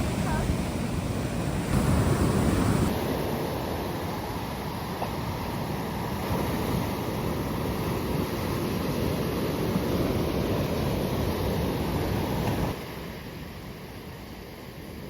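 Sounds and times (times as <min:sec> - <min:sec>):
wind buffeting microphone: 0:00.0 - 0:03.0
ocean surf: 0:00.0 - 0:14.6.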